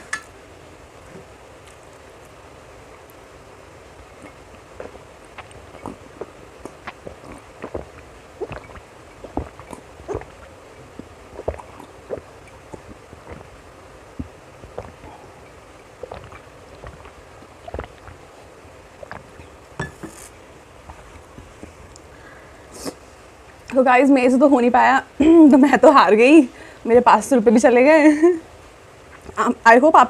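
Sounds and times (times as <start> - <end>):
steady background hiss: 0.0 - 30.0
wet chewing sounds: 1.0 - 3.2, 4.0 - 23.8.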